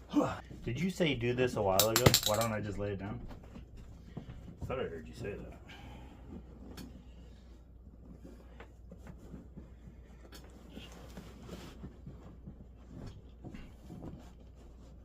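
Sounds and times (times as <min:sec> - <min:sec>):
hands scratching and rustling: 0:06.3 - 0:15.0.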